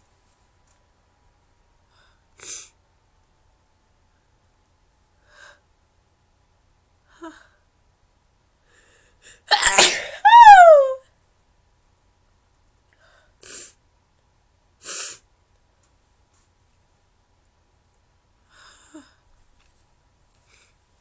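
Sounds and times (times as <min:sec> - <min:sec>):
faint breaths: 0:01.8 - 0:02.8, 0:08.6 - 0:09.5
woman sneezing: 0:09.5 - 0:11.0.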